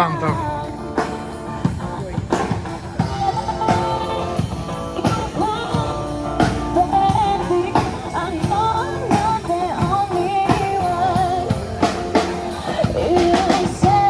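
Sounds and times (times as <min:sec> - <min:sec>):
instrumental backing with steady beat: 0:00.0 - 0:14.0
person singing: 0:02.3 - 0:14.0.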